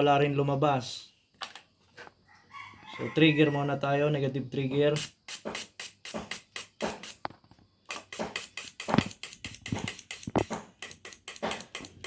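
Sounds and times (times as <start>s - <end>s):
fuel injector clicking and spraying: 5.0s - 12.0s.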